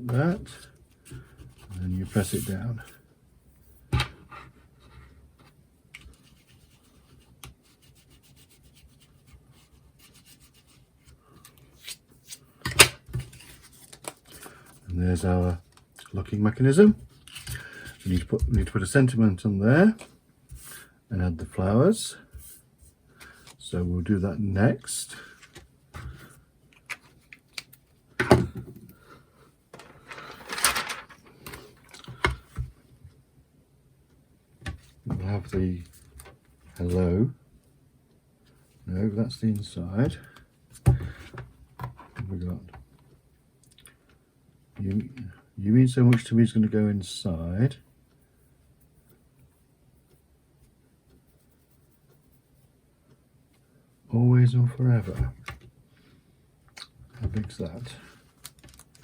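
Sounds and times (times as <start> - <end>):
paper rustling and scraping: 0.6 - 3.0, 13.1 - 14.8, 30.0 - 31.8.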